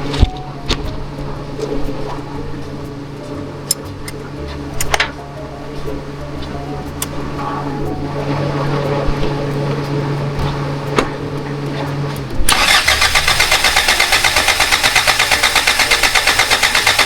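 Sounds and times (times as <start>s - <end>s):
steady hum: 0.0s - 17.0s
truck engine cranking on starter: 9.8s - 17.0s.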